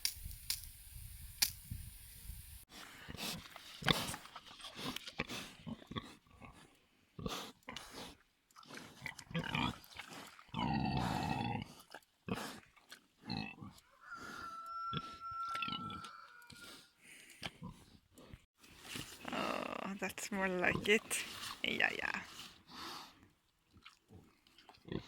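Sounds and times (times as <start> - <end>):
hose spraying water: 0.0 - 2.6
pigs grunting: 4.8 - 8.1, 8.7 - 16.8, 24.1 - 25.0.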